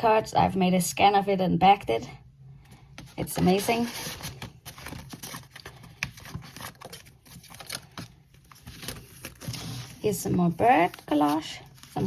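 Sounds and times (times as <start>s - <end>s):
paper pages rustling and turning: 3.0s - 12.0s.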